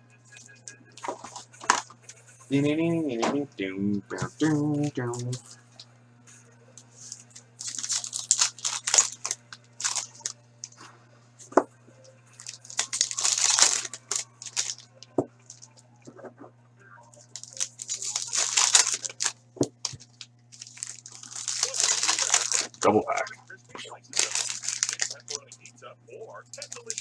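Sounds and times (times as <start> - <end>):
foil wrappers tearing and crinkling: 6.9 - 10.8, 12.4 - 15.8, 17.2 - 23.4, 24.1 - 25.7, 26.4 - 27.0.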